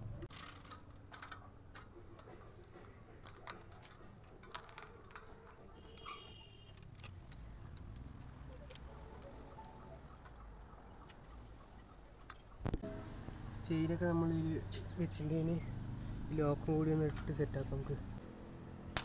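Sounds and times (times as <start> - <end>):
bicycle chain clicking and rattling: 0.2 - 9.6.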